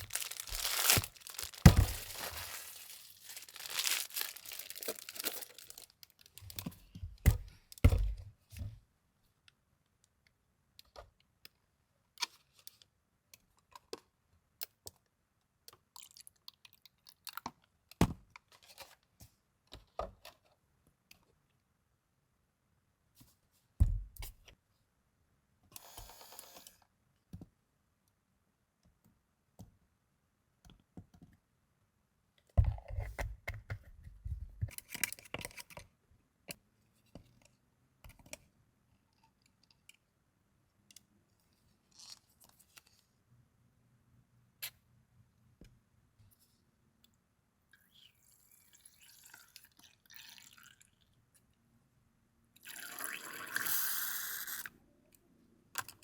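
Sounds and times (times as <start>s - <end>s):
plastic packaging crinkling and tearing: 0.0s - 6.6s.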